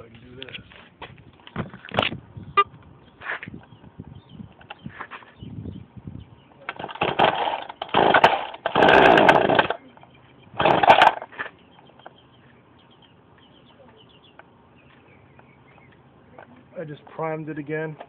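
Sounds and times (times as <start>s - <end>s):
chainsaw engine turning over: 6.7s - 9.8s, 10.5s - 11.5s
chainsaw starter cord pulls: 6.7s - 9.8s, 10.6s - 11.4s.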